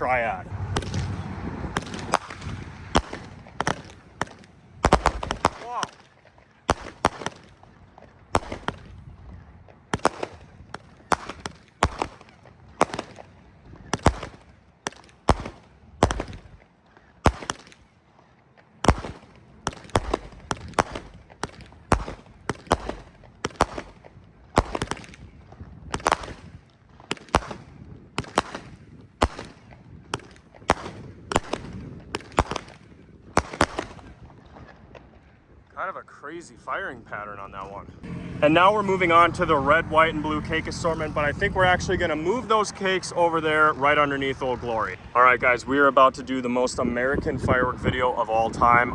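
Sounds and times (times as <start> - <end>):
firework bangs: 0.0 - 9.2, 9.9 - 16.6, 17.2 - 17.8, 18.8 - 34.4.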